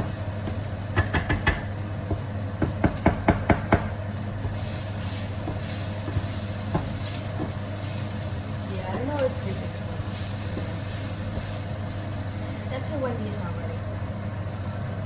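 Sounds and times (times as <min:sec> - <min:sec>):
steady low hum: 0:00.0 - 0:15.0
utensil knocking against cookware: 0:01.0 - 0:04.6.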